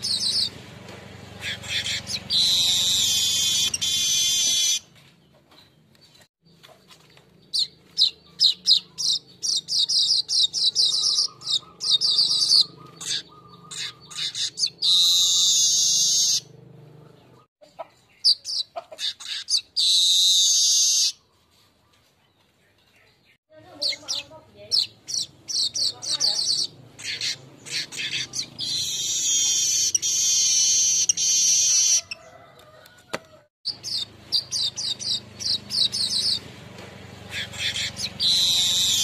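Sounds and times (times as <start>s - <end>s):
high sharp bird chirps: 0.0s - 0.6s, 1.3s - 4.9s, 7.4s - 17.5s, 18.1s - 21.6s, 23.6s - 32.2s, 33.7s - 36.5s, 37.1s - 39.0s.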